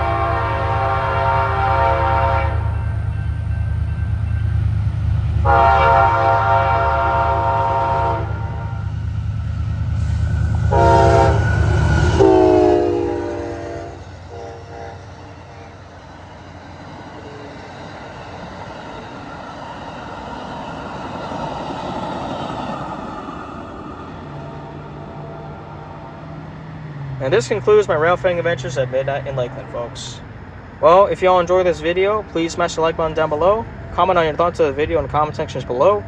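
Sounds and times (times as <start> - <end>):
train horn blasts: 0.0 - 2.9, 5.4 - 8.8, 10.6 - 15.8
passenger cars rolling: 14.9 - 36.0.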